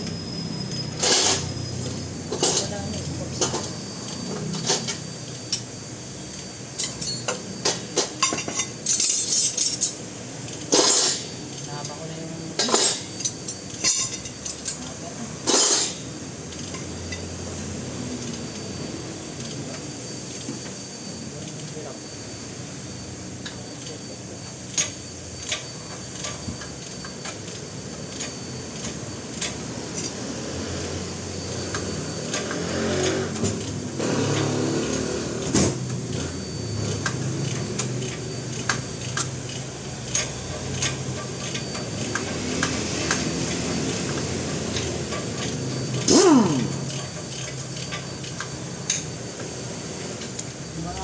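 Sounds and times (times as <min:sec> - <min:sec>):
metal tools clinking and tapping: 0:00.0 - 0:05.7, 0:06.8 - 0:17.3, 0:24.7 - 0:30.2, 0:31.7 - 0:49.5
steady background hum: 0:00.0 - 0:51.0.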